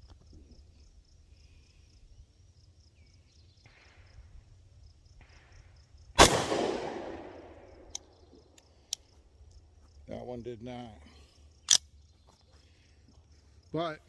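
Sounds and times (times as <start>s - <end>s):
pistol shot with echo: 6.2s - 8.0s.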